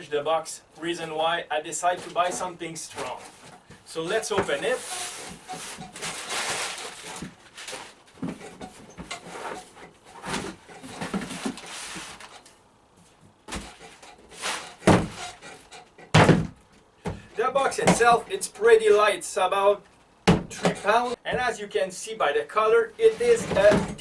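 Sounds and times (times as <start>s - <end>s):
plastic tool box rustling and scraping: 0.9s - 18.8s, 19.8s - 21.5s, 22.9s - 24.0s
loud knocks on tool box: 14.5s - 15.4s, 16.1s - 17.2s, 20.3s - 20.8s.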